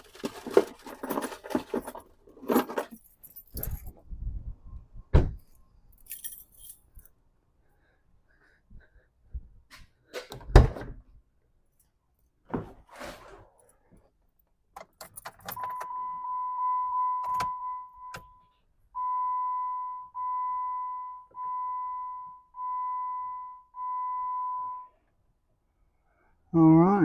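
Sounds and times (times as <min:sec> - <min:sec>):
keys jangling: 0:00.8 - 0:04.0, 0:06.0 - 0:07.1, 0:14.8 - 0:15.7
dashboard warning chime: 0:15.5 - 0:25.0.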